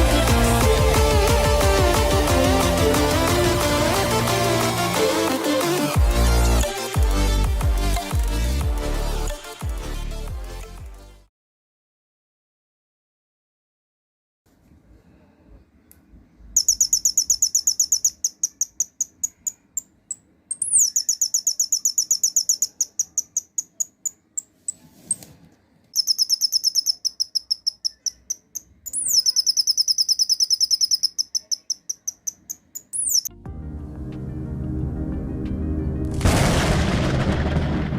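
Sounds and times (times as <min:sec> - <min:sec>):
electronic chirping trills: 0:16.6 - 0:24.5, 0:26.0 - 0:33.4.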